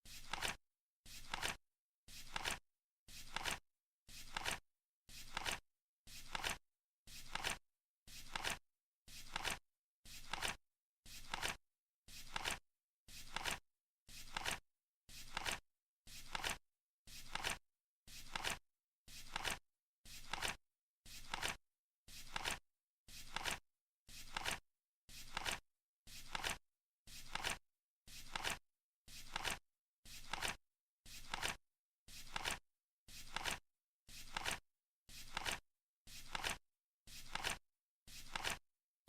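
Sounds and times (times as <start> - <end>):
flip clock card flipping: 0.2 - 0.6, 1.2 - 1.6, 3.3 - 3.6, 4.3 - 4.6, 31.2 - 31.6, 33.3 - 33.6, 34.3 - 34.6, 35.3 - 35.6, 37.3 - 37.6, 38.3 - 38.6.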